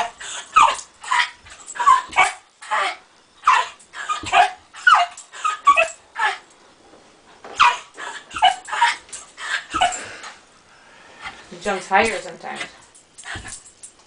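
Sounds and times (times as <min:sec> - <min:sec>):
dog yipping: 0:00.0 - 0:06.4, 0:07.6 - 0:10.0.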